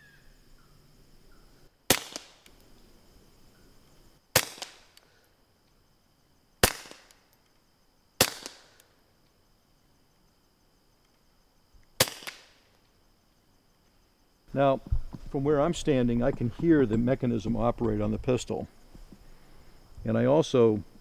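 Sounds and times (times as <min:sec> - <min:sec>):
suppressed pistol shots: 0:01.9 - 0:02.5, 0:04.3 - 0:05.0, 0:06.6 - 0:07.2, 0:08.2 - 0:08.7, 0:12.0 - 0:12.6
bullets striking dirt: 0:01.9 - 0:02.6, 0:04.3 - 0:05.1, 0:06.6 - 0:07.5, 0:08.2 - 0:08.9, 0:12.0 - 0:12.7.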